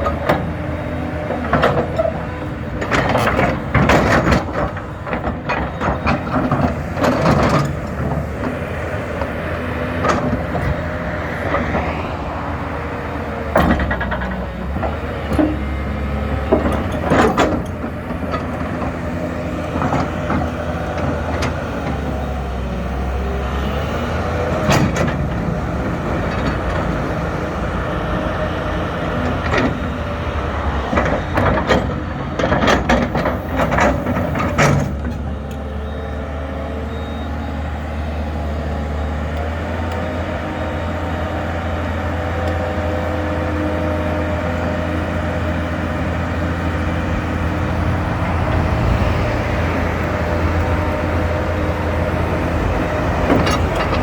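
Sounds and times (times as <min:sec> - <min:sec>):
excavator diesel engine running: 0:00.0 - 0:54.0
metallic knocks and clanks: 0:13.5 - 0:19.1, 0:30.8 - 0:35.2.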